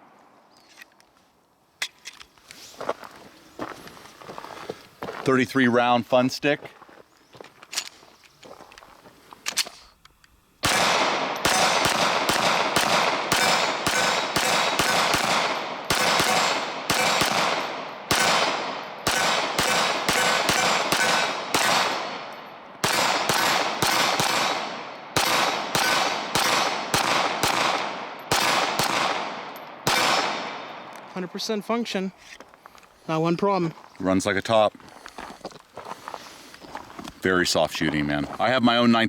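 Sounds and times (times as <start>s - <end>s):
pistol shots with ringing echo: 10.6s - 31.2s.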